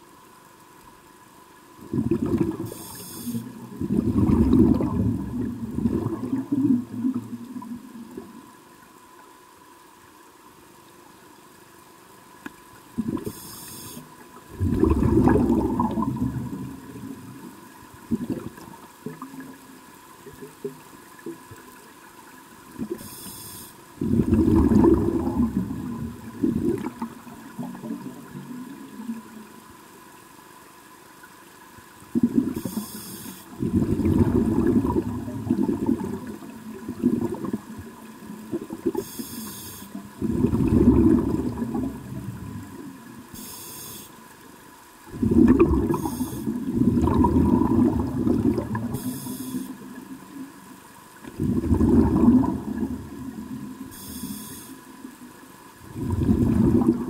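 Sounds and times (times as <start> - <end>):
exhaled bubbles rumbling: 1.8 - 8.6, 12.8 - 13.4, 14.4 - 20.8, 24.0 - 29.7, 32.1 - 32.7, 33.5 - 39.1, 40.0 - 43.3, 45.0 - 49.2, 49.8 - 54.0, 55.7 - 57.0
regulator hiss on inhalation: 2.7 - 3.6, 13.2 - 14.2, 23.0 - 23.9, 32.6 - 33.6, 39.0 - 40.0, 43.3 - 44.2, 45.9 - 46.6, 48.9 - 49.8, 53.9 - 54.9.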